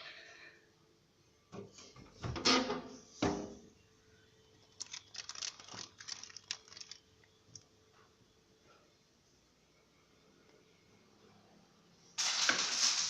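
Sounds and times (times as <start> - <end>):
rustling and crinkling handling: 4.6 - 7.7
small crackles and clicks: 4.6 - 7.7.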